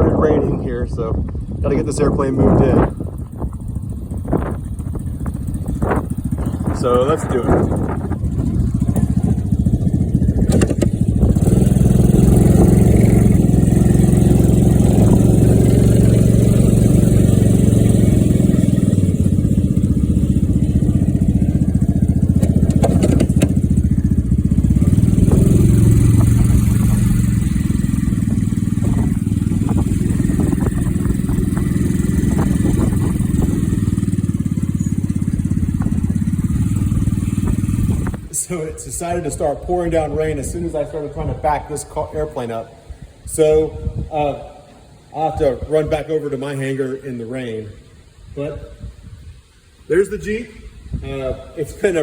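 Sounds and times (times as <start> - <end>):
small tug engine running under load: 2.4 - 38.4.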